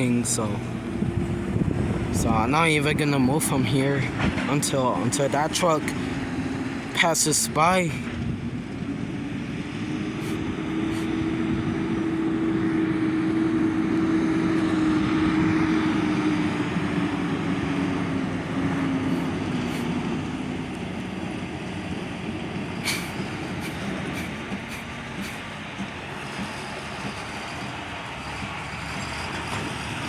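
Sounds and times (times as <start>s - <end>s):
truck driving past: 7.8s - 30.0s.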